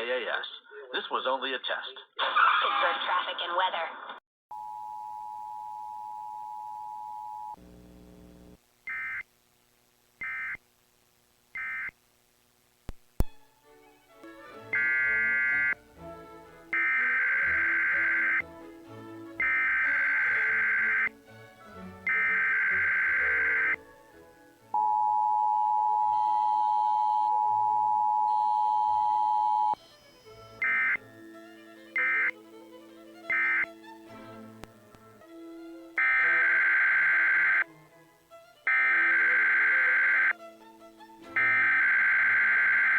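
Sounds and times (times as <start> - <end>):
faint background music: 13.2 - 25.1, 26.0 - 42.9
digital data bursts: 14.8 - 15.8, 16.8 - 18.4, 19.4 - 21.1, 22.1 - 23.8, 30.3 - 31.0, 32.0 - 32.3, 33.3 - 33.7, 36.0 - 37.6, 38.7 - 40.3, 41.4 - 42.9
loud steady alert tone: 14.8 - 15.8, 16.7 - 18.4, 19.4 - 21.1, 22.1 - 23.8, 30.6 - 31.1, 32.0 - 32.4, 33.3 - 33.7, 36.0 - 37.6, 38.7 - 40.3, 41.4 - 42.9.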